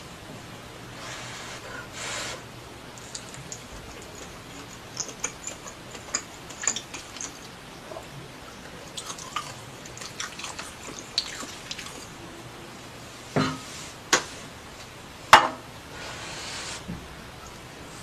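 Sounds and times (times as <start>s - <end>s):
wet chewing and smacking: 3.0s - 12.2s.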